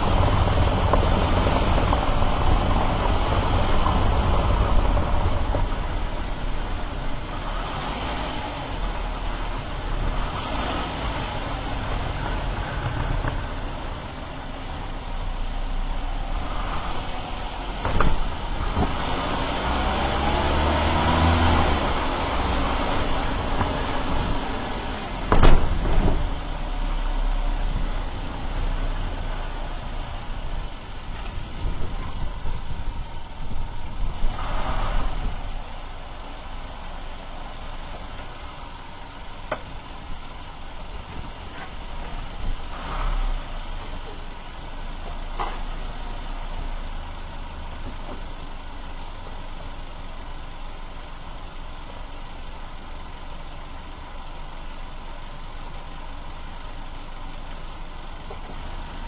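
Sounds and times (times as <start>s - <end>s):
road and tyre rumble: 0.0s - 59.0s
suspension clicks or knocks: 17.8s - 19.0s, 22.8s - 26.6s.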